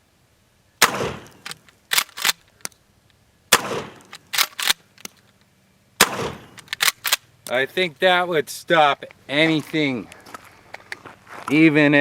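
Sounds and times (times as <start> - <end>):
shotgun shot: 0.8 - 2.0, 3.5 - 4.1, 6.0 - 6.9
shotgun slide clacking: 1.0 - 2.8, 3.6 - 5.2, 6.0 - 7.2.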